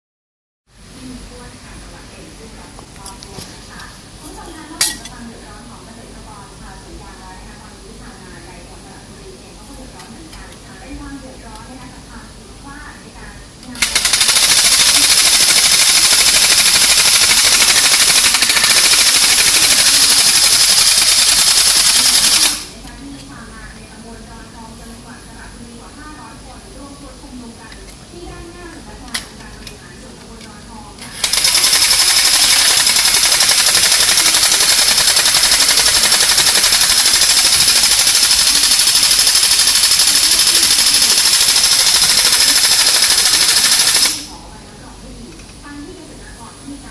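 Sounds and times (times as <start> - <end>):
toy machine gun rattling: 13.8 - 22.8, 31.0 - 44.3.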